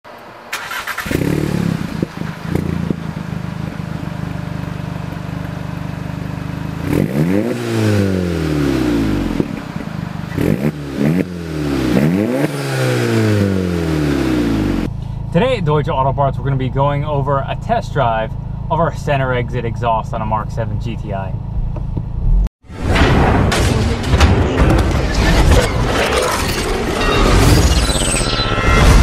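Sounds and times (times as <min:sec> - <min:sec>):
car engine revving: 0:00.5 - 0:14.9.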